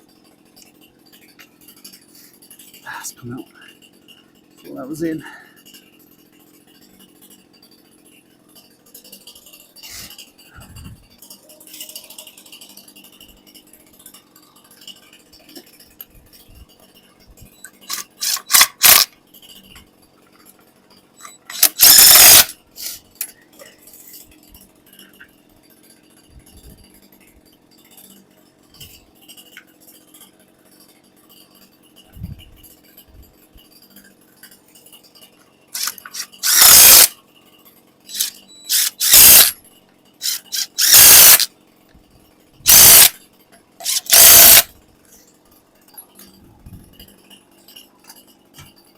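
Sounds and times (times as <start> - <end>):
nuts and tools clinking: 17.7 - 19.1, 21.2 - 23.4, 35.8 - 37.2, 38.1 - 39.6, 40.2 - 41.5, 42.7 - 43.2, 43.8 - 44.7
power tool spinning nuts: 17.8 - 19.1, 21.2 - 23.2, 35.8 - 37.2, 38.1 - 39.6, 40.2 - 41.5, 42.6 - 43.2, 43.8 - 44.7.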